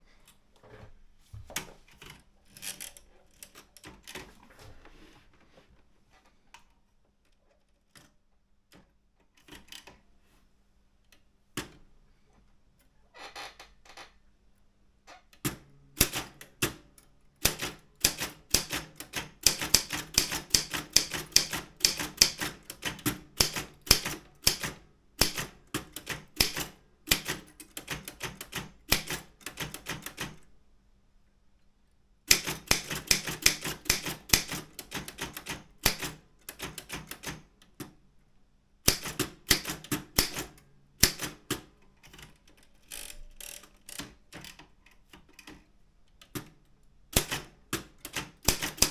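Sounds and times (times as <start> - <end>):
manual typewriter typing: 17.4 - 30.4, 32.3 - 37.5, 38.9 - 45.6, 46.2 - 48.9.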